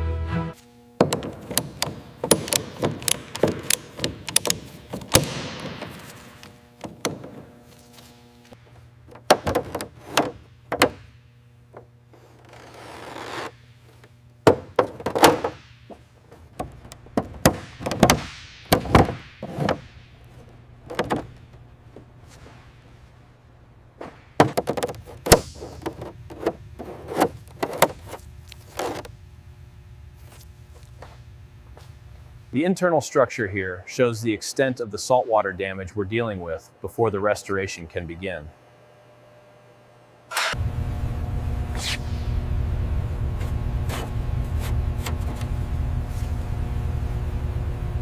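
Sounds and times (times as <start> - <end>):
knocks and thuds on metal: 1.0 - 6.2, 9.1 - 11.1, 14.4 - 21.4, 24.0 - 26.6
scraping: 1.2 - 23.4, 24.0 - 29.1.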